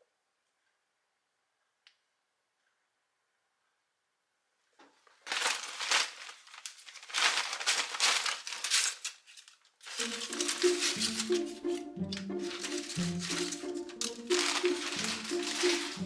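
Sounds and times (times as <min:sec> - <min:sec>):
crinkling rustling handling noise: 0:04.8 - 0:16.0
music: 0:09.9 - 0:16.0.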